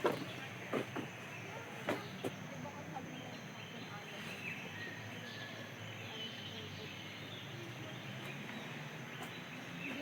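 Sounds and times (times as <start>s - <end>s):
distant voices: 0.0s - 10.0s
faint bird chirps: 3.0s - 10.0s.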